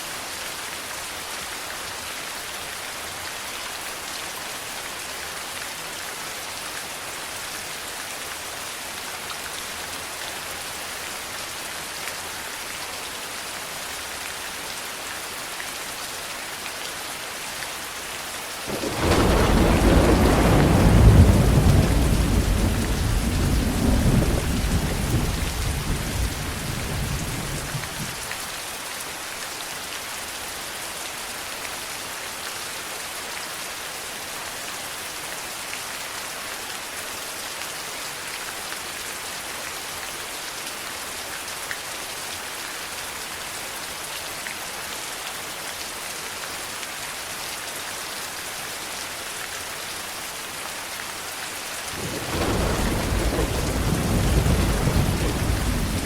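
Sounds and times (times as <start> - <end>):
steady rain falling: 0.0 - 56.0
low rumble of thunder: 18.7 - 28.2, 52.0 - 56.0.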